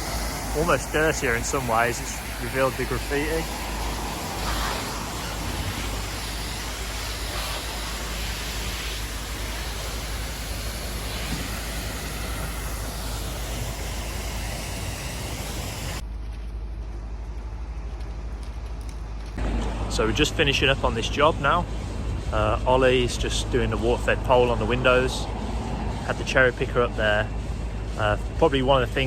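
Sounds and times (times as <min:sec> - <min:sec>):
pressure washer spray hissing: 0:00.0 - 0:16.0.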